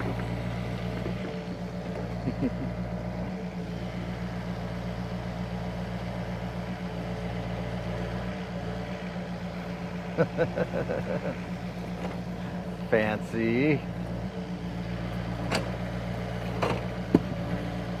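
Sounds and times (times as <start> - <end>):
excavator engine running: 0.0 - 18.0
loud clunk: 16.5 - 17.4.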